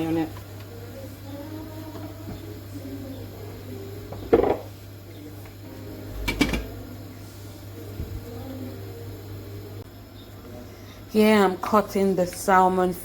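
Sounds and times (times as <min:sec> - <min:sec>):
low hum: 0:05.7 - 0:10.0
kitchen things clattering: 0:06.2 - 0:06.8.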